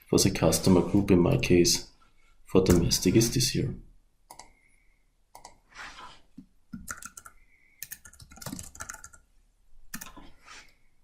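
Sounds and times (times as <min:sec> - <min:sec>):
typing on computer keyboard: 0:06.8 - 0:09.2, 0:09.9 - 0:10.2.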